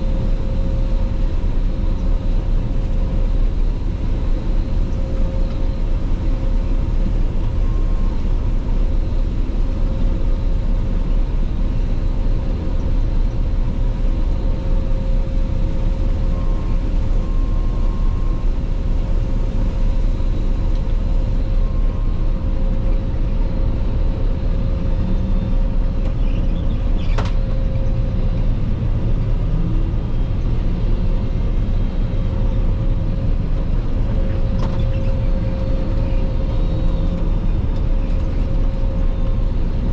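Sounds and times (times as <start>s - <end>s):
combine harvester drone: 0.0s - 39.9s.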